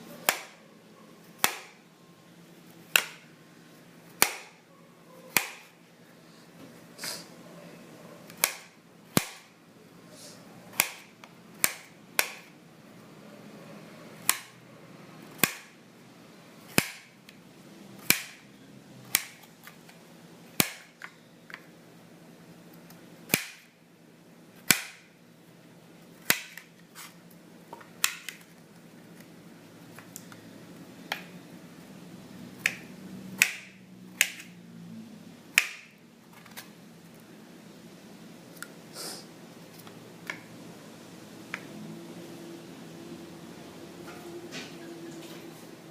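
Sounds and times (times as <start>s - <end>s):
knife chopping potatoes: 0.2s - 0.6s, 1.4s - 1.8s, 4.1s - 4.6s, 5.3s - 5.7s, 8.3s - 9.5s, 10.7s - 12.5s, 18.0s - 18.4s, 23.3s - 23.7s, 24.6s - 25.0s, 32.6s - 34.5s.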